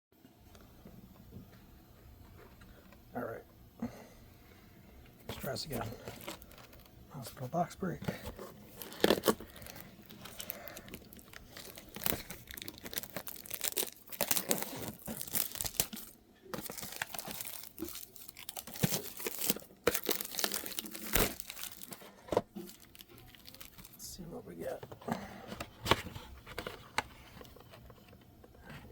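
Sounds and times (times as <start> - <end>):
packaging torn and crinkled: 6.0 - 6.9, 8.7 - 24.0.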